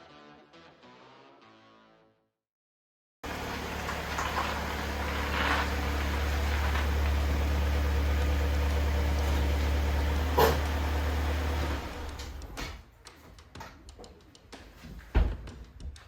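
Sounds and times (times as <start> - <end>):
car engine idling: 3.2 - 12.6.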